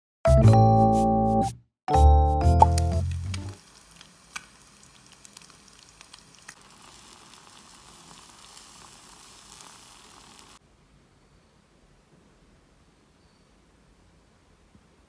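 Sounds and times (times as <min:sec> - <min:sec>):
food sizzling in a pan: 0:03.0 - 0:10.6.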